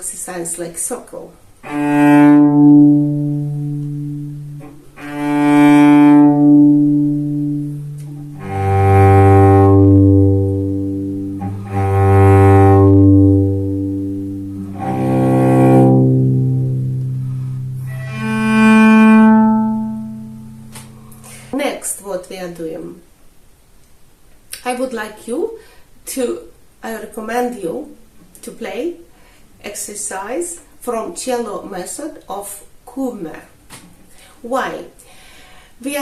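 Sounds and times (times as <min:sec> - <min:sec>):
cello bowing sustained notes: 0:01.6 - 0:21.5.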